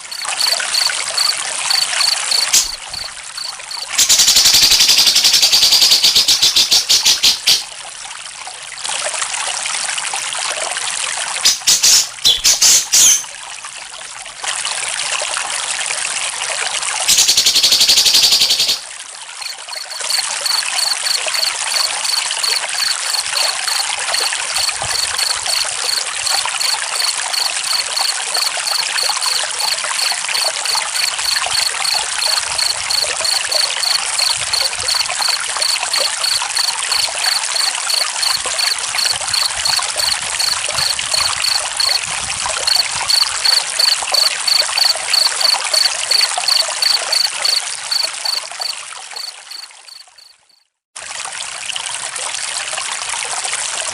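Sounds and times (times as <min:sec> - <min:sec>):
cricket chirping: 0:00.0 - 0:07.6, 0:17.1 - 0:18.8, 0:19.4 - 0:42.0, 0:42.6 - 0:50.6
trickling water: 0:00.0 - 0:53.9.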